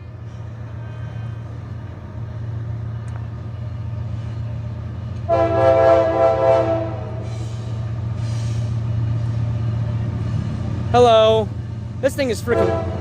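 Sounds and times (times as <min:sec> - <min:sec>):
locomotive engine rumbling: 0:00.0 - 0:13.0
locomotive air horn blast: 0:05.3 - 0:07.7, 0:12.4 - 0:13.0.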